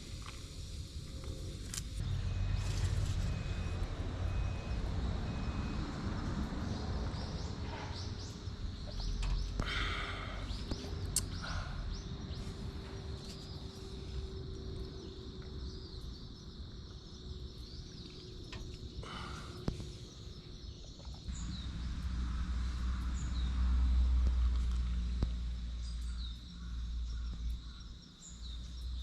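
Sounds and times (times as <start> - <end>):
low rumble: 0.0 - 16.4, 19.1 - 28.6
birds chirping: 6.4 - 29.0.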